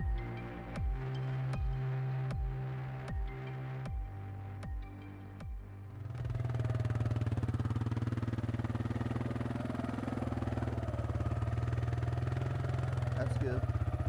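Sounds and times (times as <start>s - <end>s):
electronic music: 0.0s - 6.0s
small engine idling: 0.0s - 14.0s.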